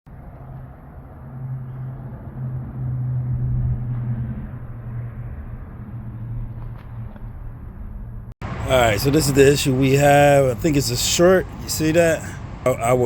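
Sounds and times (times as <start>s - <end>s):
truck engine idling: 7.5s - 13.0s.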